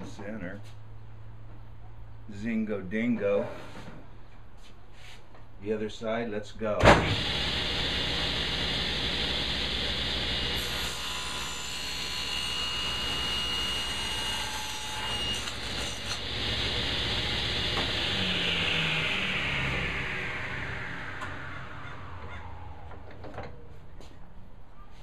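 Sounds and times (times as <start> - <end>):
table saw cutting board: 7.0 - 23.2.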